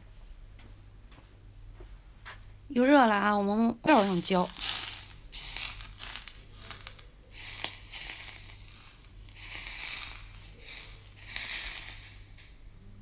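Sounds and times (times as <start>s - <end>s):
hot oil sizzling and crackling: 3.8s - 12.9s.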